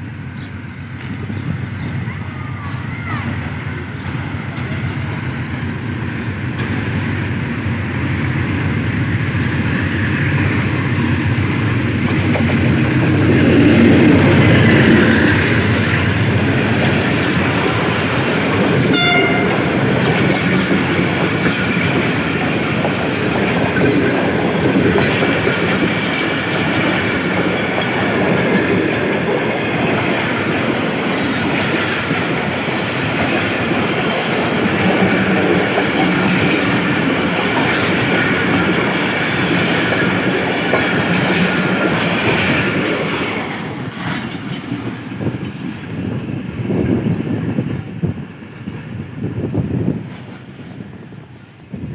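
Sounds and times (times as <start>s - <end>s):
diesel locomotive chugging: 0.0s - 51.9s
wheels clicking over rail joints: 11.3s - 45.7s.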